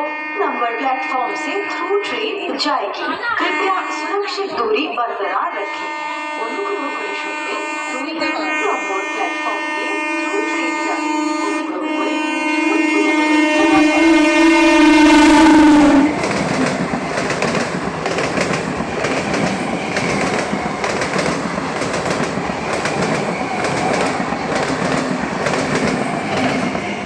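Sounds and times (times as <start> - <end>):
train horn: 0.0 - 2.3, 3.4 - 4.6, 5.3 - 16.6
train rumbling past: 11.0 - 27.0
wheels clicking over rail joints: 16.2 - 26.9.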